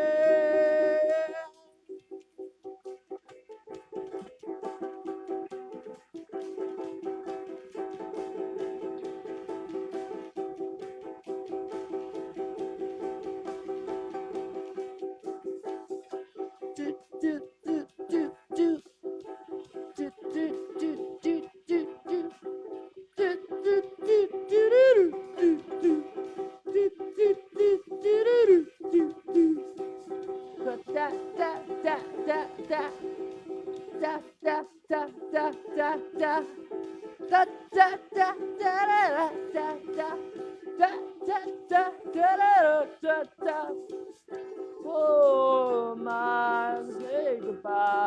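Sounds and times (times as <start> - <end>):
wordless sung notes: 0.0 - 2.2, 15.5 - 48.0
acoustic guitar strummed: 37.2 - 44.8.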